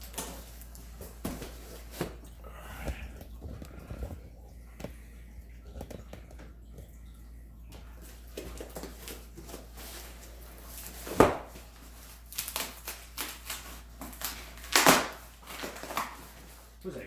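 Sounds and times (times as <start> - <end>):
cardboard package rustling: 0.0 - 4.4, 8.0 - 16.8
cardboard tearing: 8.4 - 16.7.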